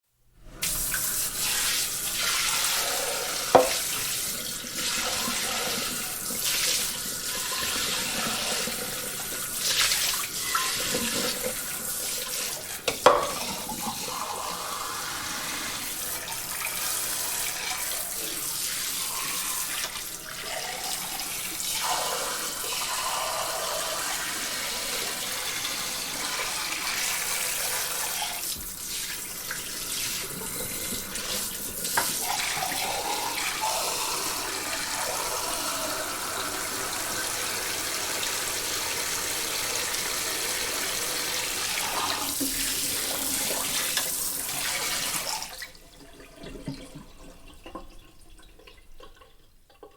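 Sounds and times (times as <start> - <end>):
sink spray running over dishes: 0.6 - 45.6
dishes clinking: 3.5 - 4.0, 12.9 - 13.6.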